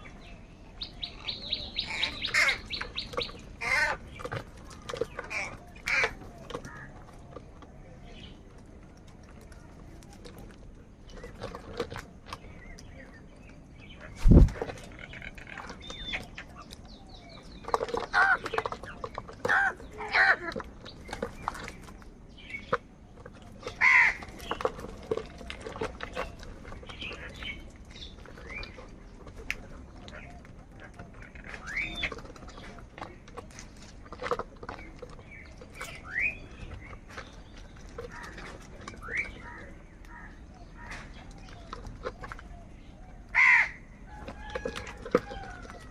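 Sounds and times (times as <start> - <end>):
crows calling harshly: 1.8 - 4.1, 5.3 - 6.9, 19.5 - 20.6, 23.8 - 24.4, 43.3 - 43.9
crows cawing: 1.9 - 2.8, 3.6 - 4.0, 23.8 - 24.3, 43.3 - 43.8.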